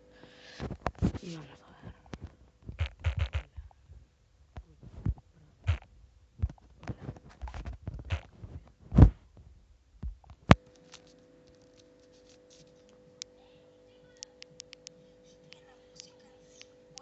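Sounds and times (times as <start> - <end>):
faint electrical hum: 0.0 - 17.0
handling noise on microphone: 0.6 - 3.6, 4.8 - 5.8, 6.4 - 9.5
sharp click: 2.8 - 3.5, 14.2 - 15.0.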